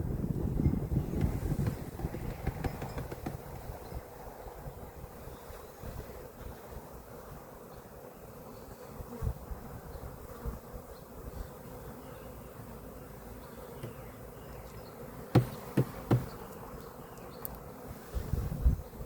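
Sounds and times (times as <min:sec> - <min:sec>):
honeybees buzzing: 0:00.1 - 0:19.0
sharp knocks: 0:01.2 - 0:03.7, 0:15.3 - 0:16.4.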